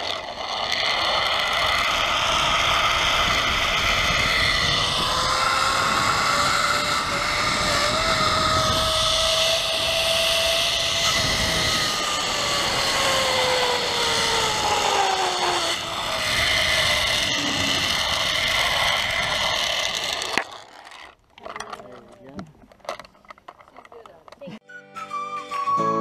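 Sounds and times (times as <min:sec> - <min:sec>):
steady rushing noise: 0:00.0 - 0:20.4
zip line pulleys whining on cable: 0:00.0 - 0:21.8.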